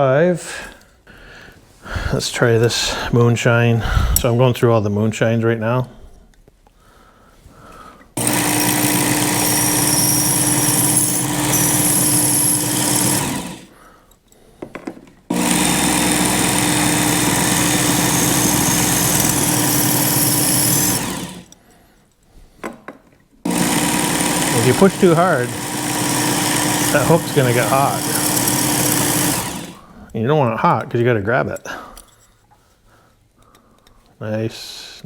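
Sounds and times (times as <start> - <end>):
electric belt sharpener running: 8.2 - 13.7, 15.3 - 21.6, 23.5 - 29.8.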